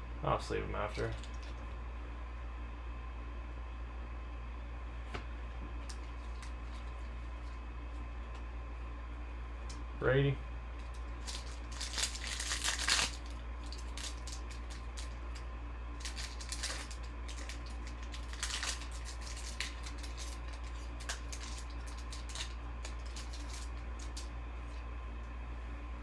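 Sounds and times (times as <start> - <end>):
steady low hum: 0.0 - 26.0
plastic crinkling: 0.9 - 1.7, 5.8 - 7.6, 10.8 - 15.4, 16.0 - 24.8.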